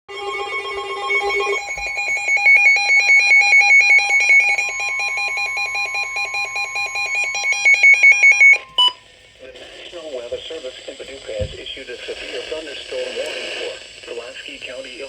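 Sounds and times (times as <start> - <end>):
pulsing electronic alert beep: 0.1 - 9.0.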